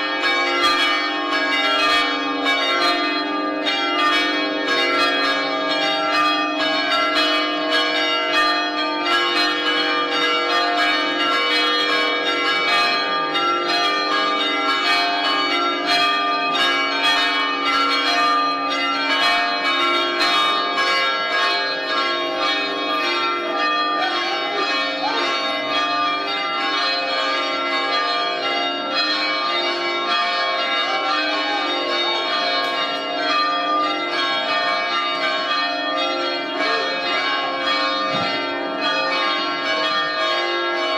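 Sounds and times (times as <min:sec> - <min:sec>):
church bells ringing: 0:00.0 - 0:40.9.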